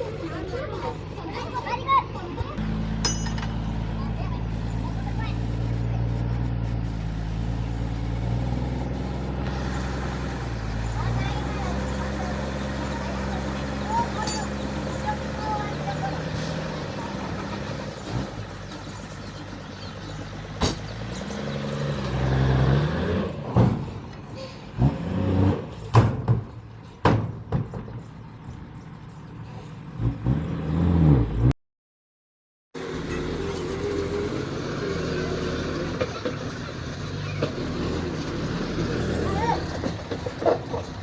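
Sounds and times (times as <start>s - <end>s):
diesel engine revving under load: 0.0s - 26.2s, 29.7s - 31.6s, 32.8s - 41.0s
metallic clanks and knocks: 3.0s - 3.8s, 14.2s - 14.6s.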